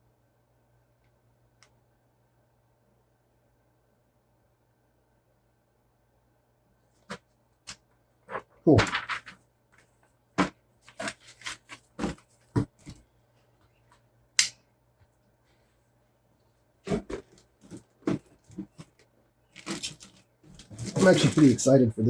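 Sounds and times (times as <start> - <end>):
parts and packaging handled: 8.3 - 14.1, 16.9 - 21.7
sharp click: 14.4 - 14.6.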